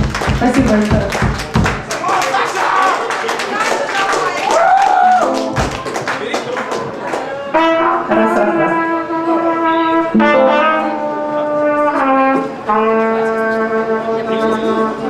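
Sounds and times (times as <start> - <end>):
brass instruments long notes: 7.5 - 15.0.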